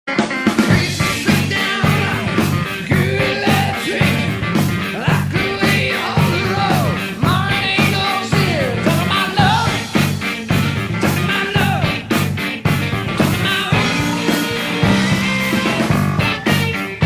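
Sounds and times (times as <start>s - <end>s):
rock music with drum beat: 0.1s - 17.0s.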